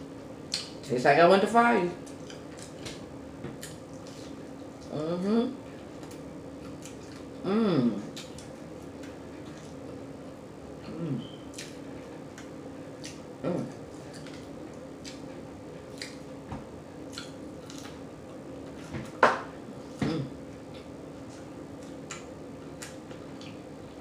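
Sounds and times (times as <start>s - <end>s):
wet chewing and lip-smacking: 0.5s - 0.8s, 2.0s - 4.9s, 6.0s - 7.4s, 8.1s - 10.0s, 11.2s - 16.3s, 17.0s - 18.0s, 20.7s - 23.7s.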